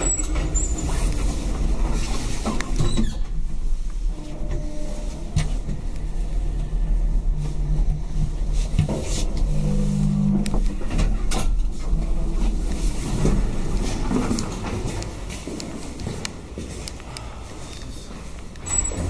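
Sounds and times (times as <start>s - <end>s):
lift low rumble: 0.0s - 19.0s
lift machine hum: 3.4s - 15.6s.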